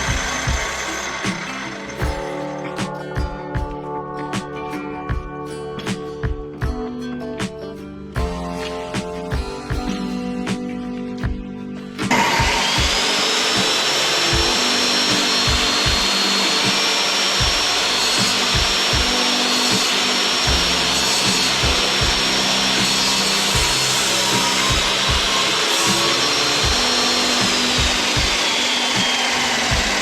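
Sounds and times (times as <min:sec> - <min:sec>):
power tool motor whine: 0:00.0 - 0:02.2, 0:12.1 - 0:30.0.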